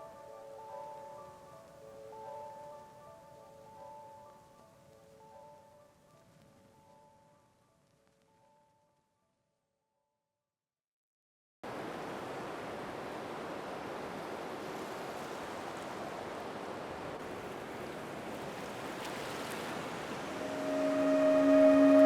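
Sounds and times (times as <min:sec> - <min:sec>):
ocean surf washing: 0:11.7 - 0:22.0.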